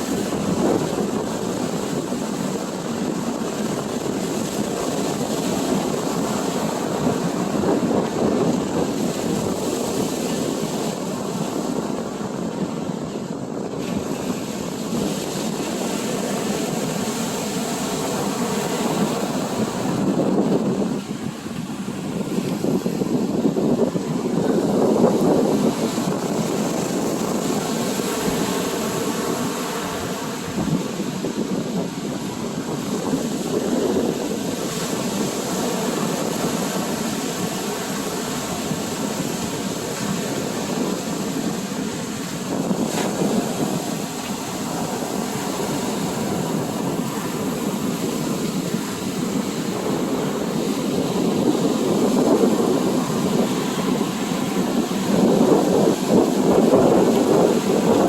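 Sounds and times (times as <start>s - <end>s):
ocean surf rushing: 0.0s - 58.0s
wind on microphone: 0.0s - 58.0s.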